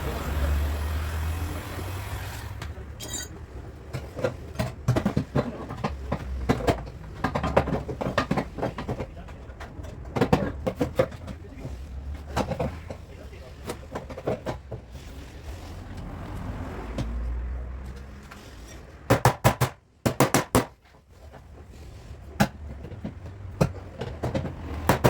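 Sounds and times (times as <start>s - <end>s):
metallic ring: 3.0s - 3.4s.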